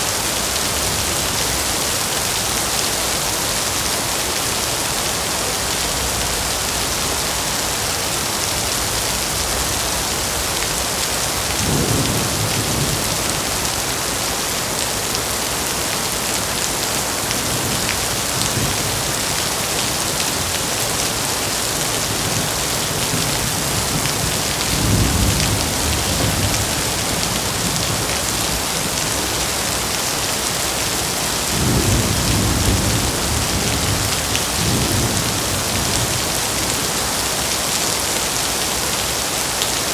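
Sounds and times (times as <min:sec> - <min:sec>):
heavy rain pouring: 0:00.0 - 0:39.9
low thunder rumbling: 0:09.4 - 0:14.4, 0:21.7 - 0:29.0, 0:31.3 - 0:36.3.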